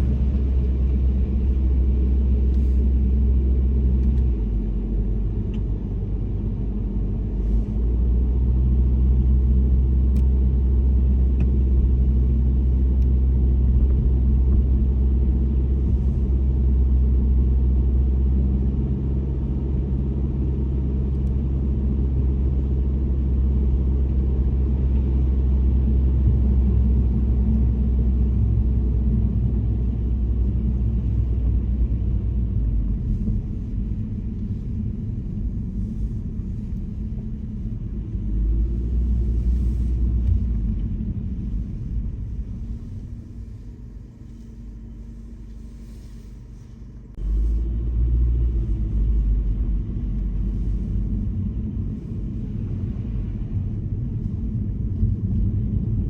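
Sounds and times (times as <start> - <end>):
car engine rumble: 0.0 - 56.0.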